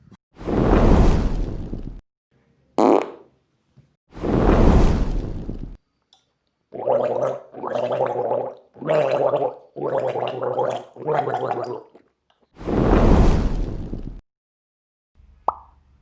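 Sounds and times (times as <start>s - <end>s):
comic gargling vocal bursts: 6.8s - 12.0s.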